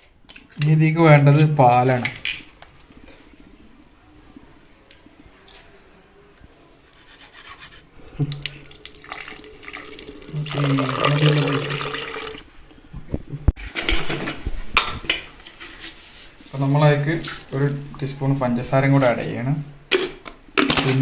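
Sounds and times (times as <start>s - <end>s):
milk pouring into container: 8.2s - 12.4s.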